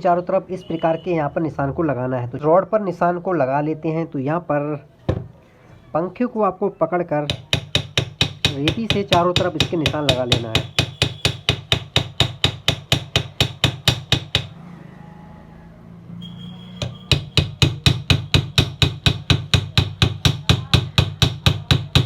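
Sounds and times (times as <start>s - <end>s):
metal file knocking on metal shaft: 7.3s - 14.5s, 16.8s - 22.0s.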